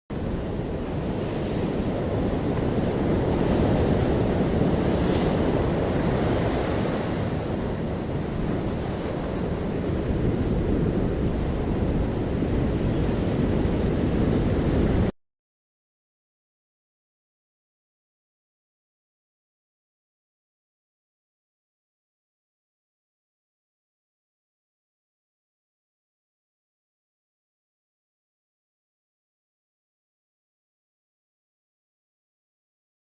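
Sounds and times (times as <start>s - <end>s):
wind rumbling on microphone: 0.1s - 15.2s
sea waves washing onto beach: 0.2s - 15.1s.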